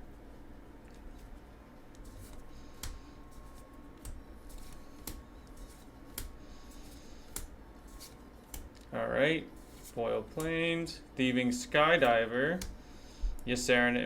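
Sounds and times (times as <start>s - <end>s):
cards rustling and sliding: 2.0s - 8.8s, 9.6s - 10.5s.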